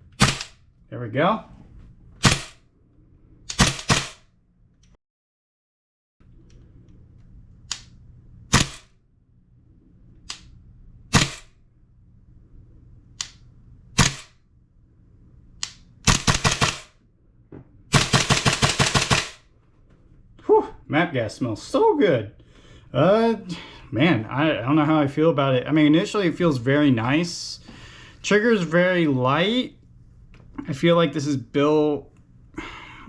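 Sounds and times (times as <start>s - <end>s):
airsoft rifle shots: 0.1s - 0.6s, 2.2s - 2.6s, 3.5s - 4.3s, 8.5s - 9.0s, 11.1s - 11.6s, 14.0s - 14.4s, 16.0s - 17.0s, 17.9s - 19.4s.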